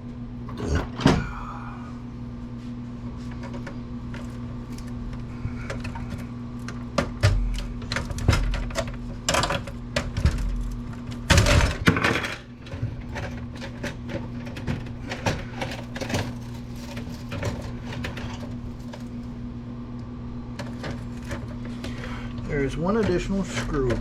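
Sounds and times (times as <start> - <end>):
steady low hum: 0.0 - 24.0
computer parts clattering: 3.4 - 19.1, 20.6 - 24.0.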